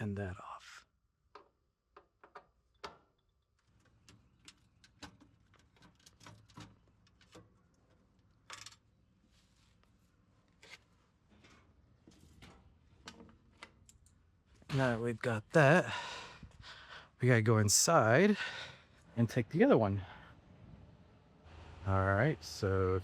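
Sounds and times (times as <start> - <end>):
hand tools and wires clicking: 1.2 - 9.0, 9.8 - 14.8.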